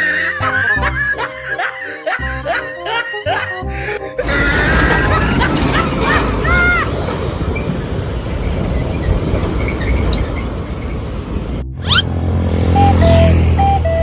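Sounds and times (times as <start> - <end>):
road traffic noise: 3.7 - 14.0
large vehicle engine hum: 4.2 - 14.0.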